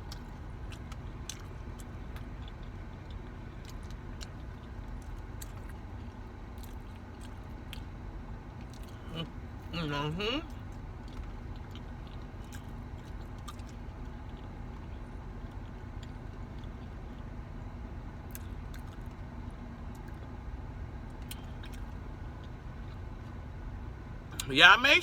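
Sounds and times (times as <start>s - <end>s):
person chewing: 0.0s - 7.9s, 8.6s - 9.3s, 10.4s - 17.3s, 18.3s - 19.1s, 21.2s - 23.2s
low steady hum: 0.0s - 25.0s.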